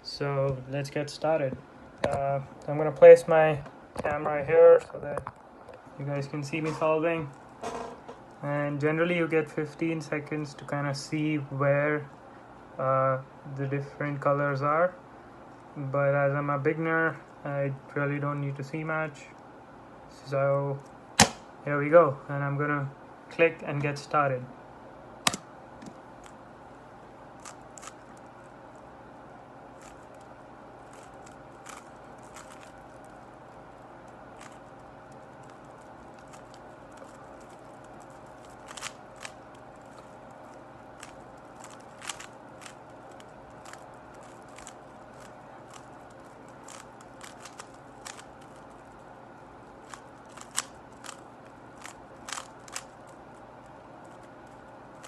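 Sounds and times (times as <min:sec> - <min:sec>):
steady background hum: 0:00.0 - 0:55.0
puzzle cube layers clicking: 0:38.7 - 0:39.4, 0:46.6 - 0:48.5, 0:49.9 - 0:51.2.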